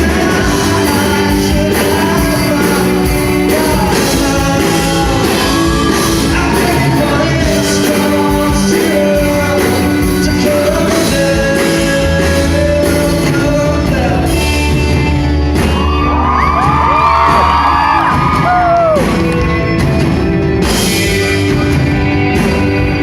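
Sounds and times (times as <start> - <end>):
lead singer singing: 0.0 - 19.2
live rock band playing: 0.0 - 23.0
crowd whooping and cheering: 4.6 - 8.2, 15.4 - 20.0.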